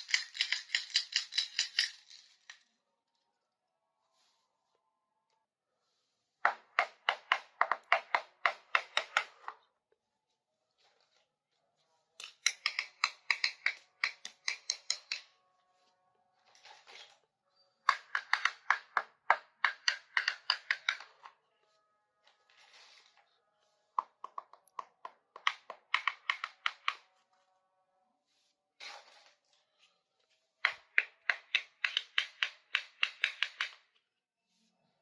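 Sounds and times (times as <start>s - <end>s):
plastic toy pieces clicking: 0.0s - 2.7s, 12.2s - 15.3s, 17.9s - 21.2s, 24.3s - 27.0s, 30.6s - 33.8s.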